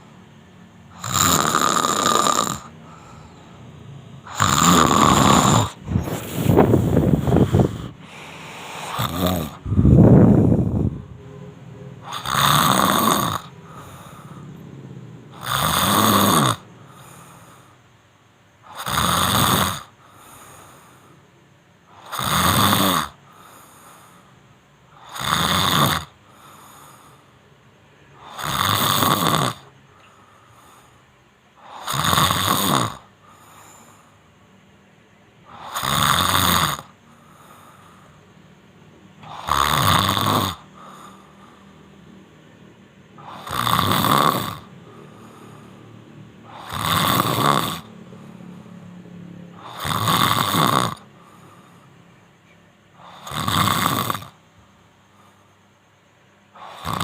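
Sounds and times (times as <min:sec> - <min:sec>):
loud snoring: 0:00.9 - 0:03.6, 0:04.2 - 0:11.1, 0:12.0 - 0:17.7, 0:18.6 - 0:21.0, 0:21.9 - 0:24.2, 0:24.9 - 0:27.2, 0:28.2 - 0:29.8, 0:31.6 - 0:34.0, 0:35.4 - 0:38.0, 0:39.2 - 0:41.7, 0:43.1 - 0:48.8, 0:49.5 - 0:51.8, 0:53.0 - 0:54.5, 0:56.5 - 0:57.0
faint breaths: 0:01.8 - 0:18.9, 0:19.8 - 0:22.2, 0:23.1 - 0:25.2, 0:26.0 - 0:28.5, 0:29.6 - 0:32.0, 0:32.9 - 0:36.1, 0:36.8 - 0:57.0.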